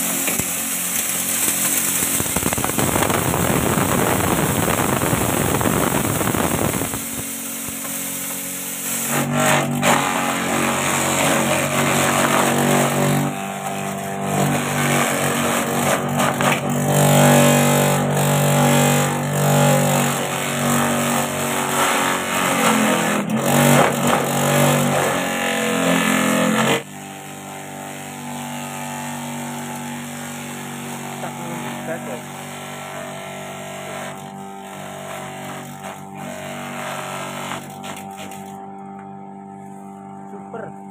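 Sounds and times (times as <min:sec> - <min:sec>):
machine motor hum: 0:00.0 - 0:18.8
grinder grinding corn: 0:00.0 - 0:40.9.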